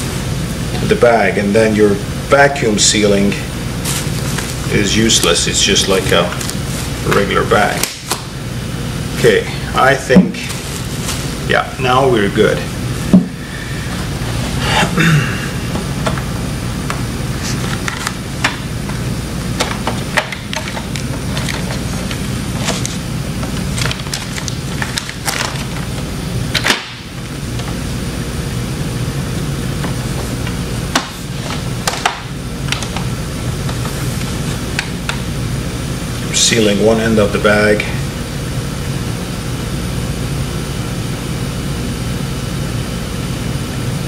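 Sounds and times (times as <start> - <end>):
low mechanical hum: 0.0 - 44.0
plastic bags rustling: 3.8 - 8.2, 10.4 - 11.6, 19.5 - 27.0.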